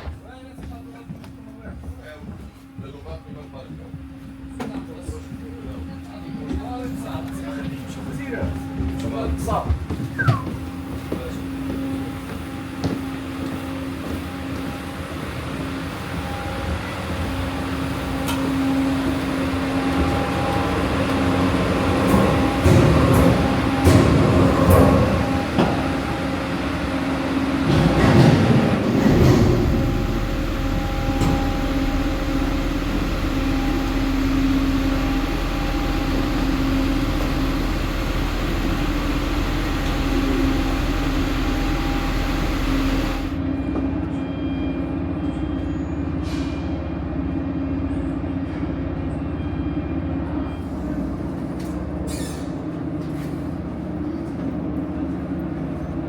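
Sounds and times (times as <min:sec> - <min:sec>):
held hum tones: 0:26.3 - 0:43.4
vehicle interior drone: 0:27.7 - 0:43.4.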